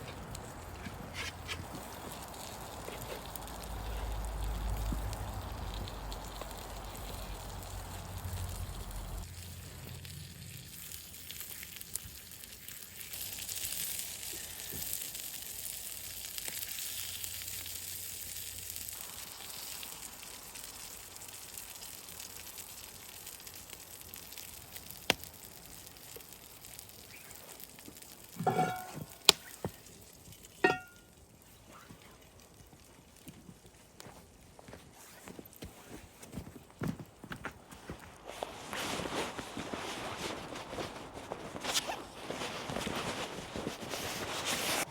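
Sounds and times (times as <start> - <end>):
food sizzling in a skillet: 0.0 - 31.5
short ringing clinks: 28.4 - 29.1, 30.6 - 31.0.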